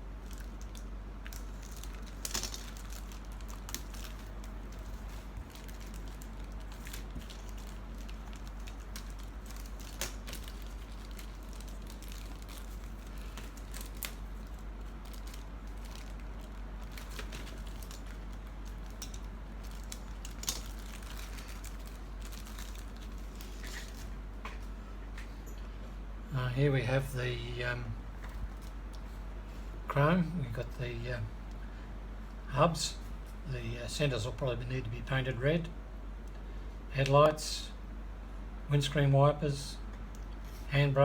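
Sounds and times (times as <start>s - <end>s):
plastic bags crinkling: 0.0s - 24.2s
steady low hum: 0.0s - 41.0s.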